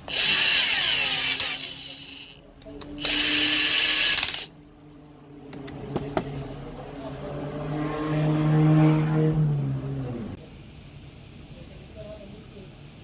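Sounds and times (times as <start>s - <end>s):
power screwdriver running: 0.0s - 2.4s, 3.0s - 4.5s
small electric motor whirring: 0.0s - 2.4s, 3.0s - 4.6s.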